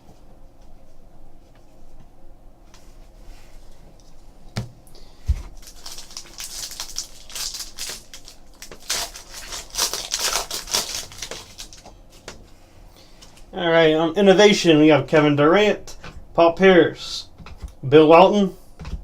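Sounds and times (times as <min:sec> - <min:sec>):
card pack wrapper tearing: 0:05.6 - 0:11.9.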